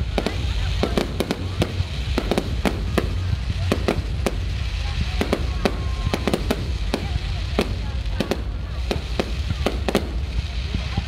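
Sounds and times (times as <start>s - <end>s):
fireworks bangs and cracks: 0.0s - 11.0s
low rumble: 0.0s - 11.0s.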